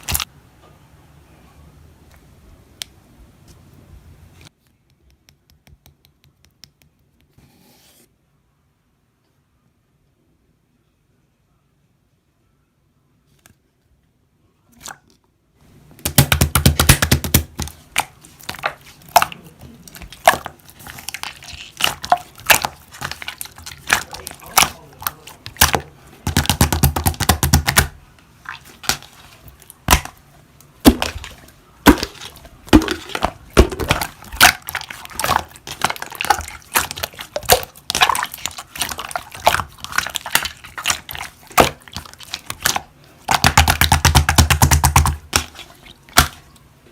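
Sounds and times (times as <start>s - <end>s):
slime squished by hand: 16.0s - 30.2s, 30.8s - 46.6s.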